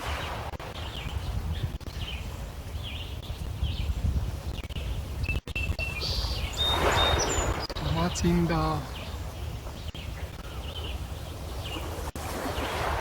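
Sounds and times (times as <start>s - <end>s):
wind buffeting microphone: 0.0s - 13.0s
birds chirping and calling: 4.8s - 12.0s.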